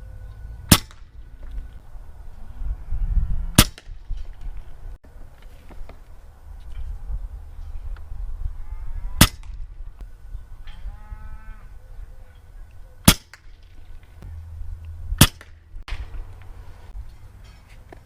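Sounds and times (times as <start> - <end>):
suppressed air rifle shots: 0.7 - 1.2, 3.6 - 4.0, 9.2 - 9.7, 13.0 - 13.7, 15.2 - 16.2.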